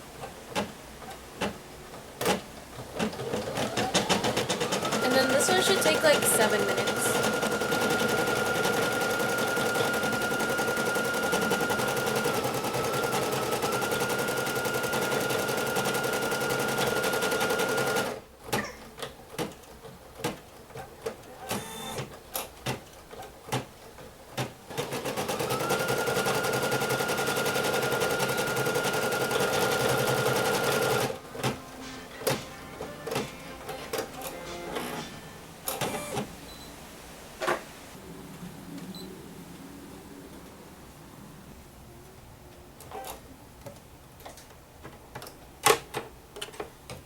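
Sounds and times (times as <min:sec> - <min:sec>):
embroidery machine stitching: 0:02.2 - 0:23.7, 0:24.4 - 0:31.6.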